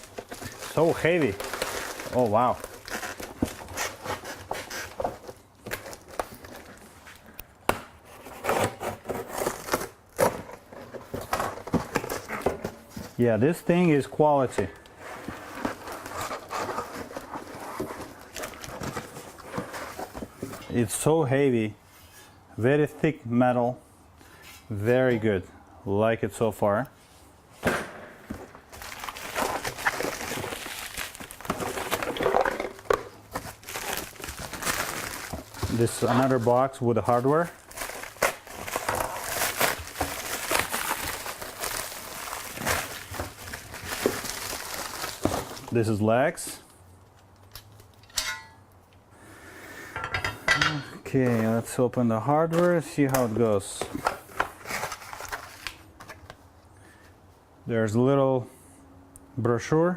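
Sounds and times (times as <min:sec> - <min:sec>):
cardboard packaging rubbing: 0:00.0 - 0:06.7, 0:15.0 - 0:20.4, 0:28.7 - 0:32.2
packaging rustling and crinkling: 0:00.0 - 0:07.4, 0:08.1 - 0:13.2, 0:13.9 - 0:20.4, 0:28.3 - 0:45.9, 0:52.5 - 0:56.4.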